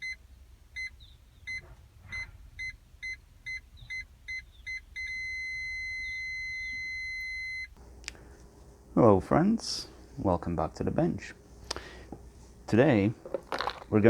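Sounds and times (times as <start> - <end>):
parking sensor alarm beeping: 0.0 - 7.8.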